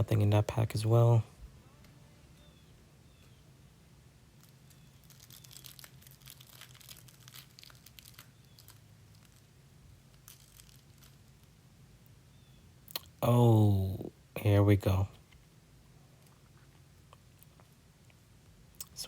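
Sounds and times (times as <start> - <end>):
foil wrapper crinkling and tearing: 4.4 - 11.6.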